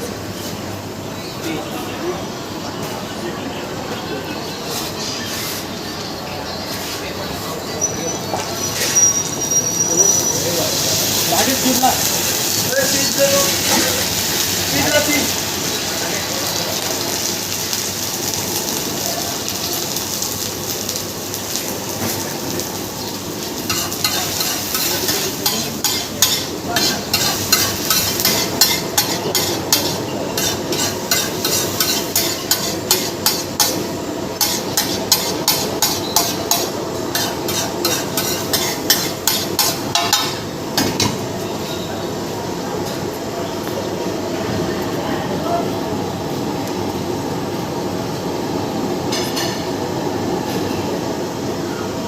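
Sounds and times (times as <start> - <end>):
eggs sizzling in a pan: 8.6 - 40.2.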